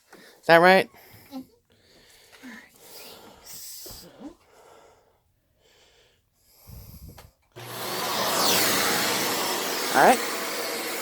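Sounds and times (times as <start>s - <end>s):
vacuum cleaner running: 7.6s - 11.0s.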